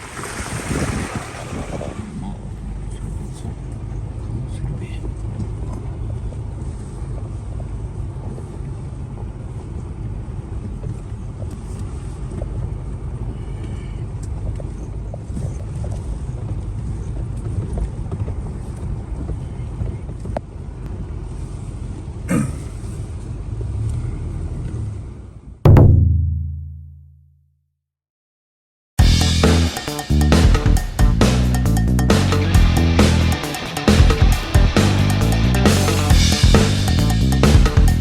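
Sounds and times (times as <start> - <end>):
vehicle rumble: 20.4 - 25.6.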